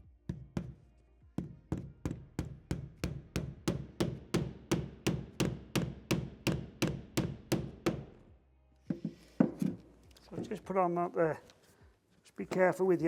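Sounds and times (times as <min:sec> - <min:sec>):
hammer driving nails into wood: 0:01.4 - 0:08.2.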